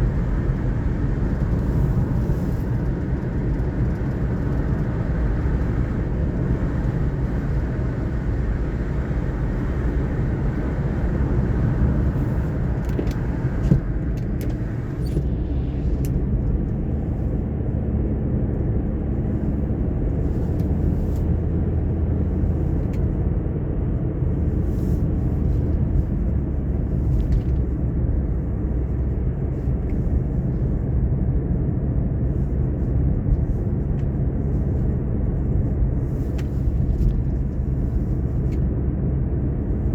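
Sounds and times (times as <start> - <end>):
road noise hiss: 0.0 - 23.3
car engine and tyres rumbling: 0.0 - 39.9.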